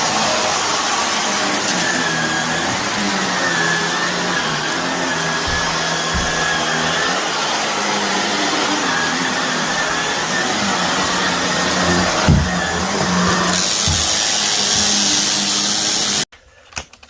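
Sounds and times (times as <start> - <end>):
vacuum cleaner running on carpet: 0.0 - 16.3
dull knocks: 5.4 - 6.7.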